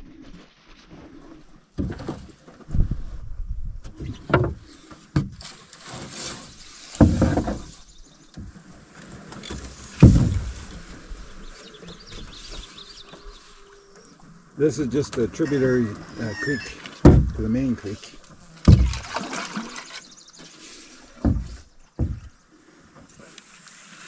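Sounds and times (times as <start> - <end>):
paddle strokes: 3.8 - 24.0
water swishing: 5.4 - 24.0
knocks against canoe hull: 7.0 - 7.8, 9.4 - 10.9, 17.0 - 17.7, 18.6 - 20.0, 21.2 - 22.4.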